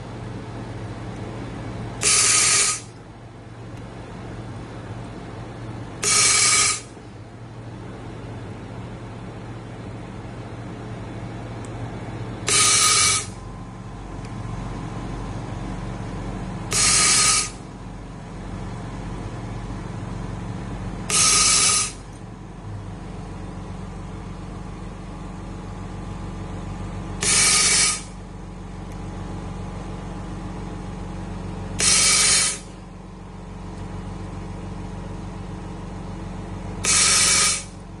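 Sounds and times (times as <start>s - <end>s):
steady machine hum: 0.0s - 38.0s
laser welder hissing bursts: 2.0s - 2.9s, 6.0s - 6.9s, 12.5s - 13.4s, 16.7s - 17.6s, 21.1s - 22.0s, 27.2s - 28.2s, 31.8s - 32.7s, 36.8s - 37.8s.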